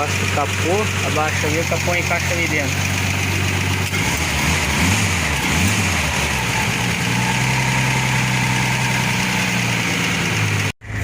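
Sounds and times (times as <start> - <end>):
pickup truck engine idling: 0.0 - 11.0.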